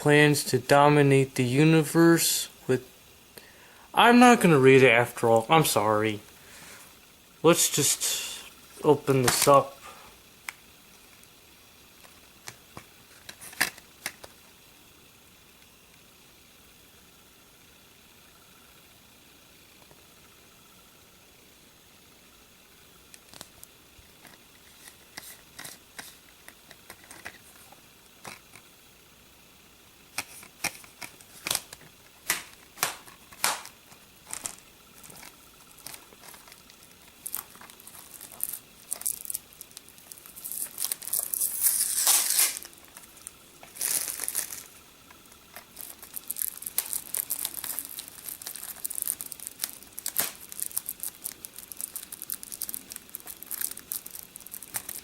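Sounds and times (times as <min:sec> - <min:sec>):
plastic tearing: 0:12.0 - 0:14.4, 0:30.2 - 0:55.0
plastic wrapping scratches and clicks: 0:12.0 - 0:14.5, 0:23.2 - 0:28.7, 0:30.1 - 0:55.0
plastic crinkling: 0:12.0 - 0:14.6, 0:30.1 - 0:55.0.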